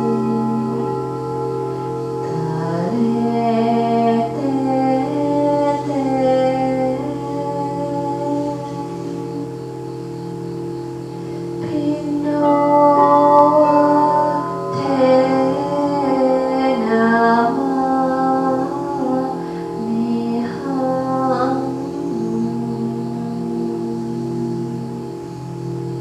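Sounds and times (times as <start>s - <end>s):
person singing slow melody: 0.0s - 26.0s
singing bowls drone: 0.0s - 26.0s.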